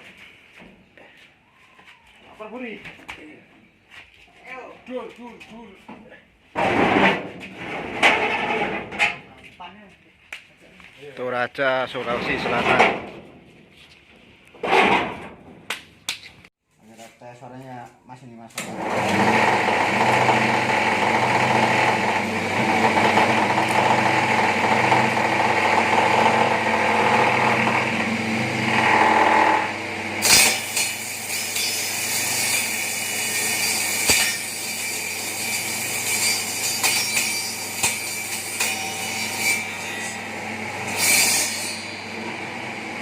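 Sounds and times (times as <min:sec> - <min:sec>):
cutting machine motor humming: 0:18.6 - 0:30.2.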